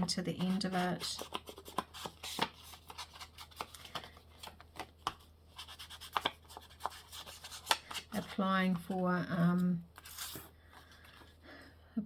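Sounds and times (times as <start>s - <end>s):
paper and card rustling and tapping: 0.0s - 9.0s.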